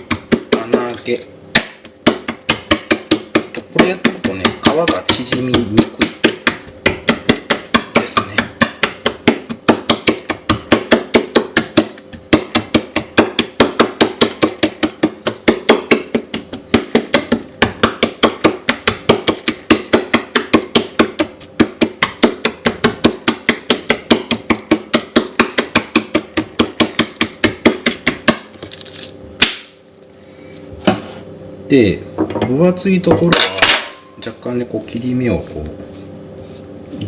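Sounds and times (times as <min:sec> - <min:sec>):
tool stabbing meat onto board: 0:00.0 - 0:28.8.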